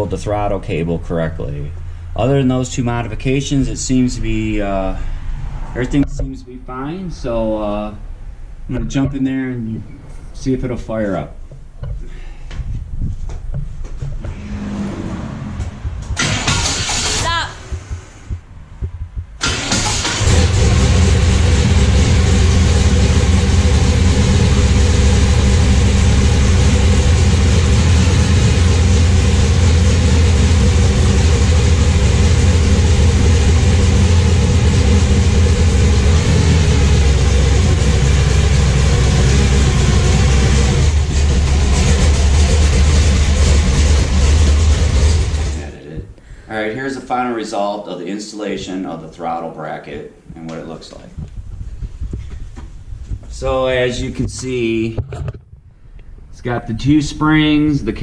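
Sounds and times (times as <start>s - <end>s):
car engine starting and running: 0.0s - 11.8s, 14.1s - 45.8s.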